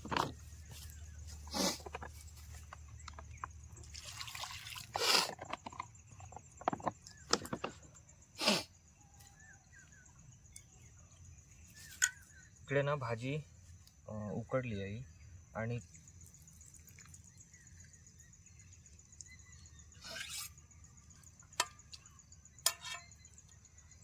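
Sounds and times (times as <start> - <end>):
water splashing and dripping: 3.5 - 5.4.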